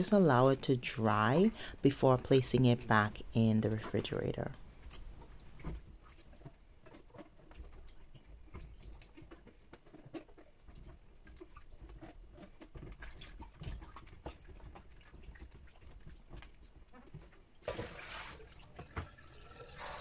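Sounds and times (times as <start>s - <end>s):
small clicks and rustles: 4.8s - 17.6s.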